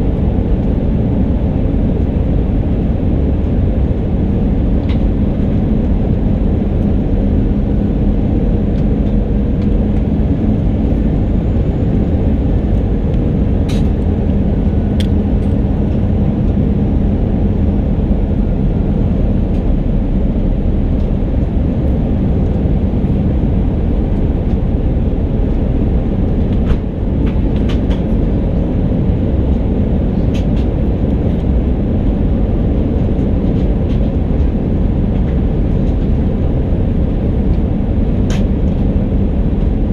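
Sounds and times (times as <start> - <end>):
aircraft engines and airflow rumble: 0.0 - 39.9.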